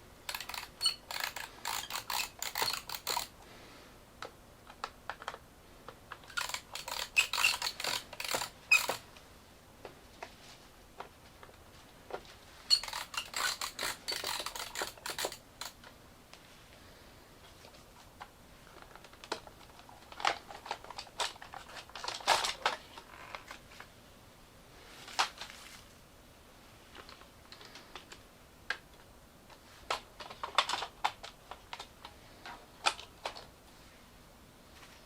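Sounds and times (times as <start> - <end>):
plastic parts clicking and clattering: 0.2 - 3.4, 4.2 - 9.0, 11.0 - 16.0, 17.5 - 23.9, 29.8 - 33.5.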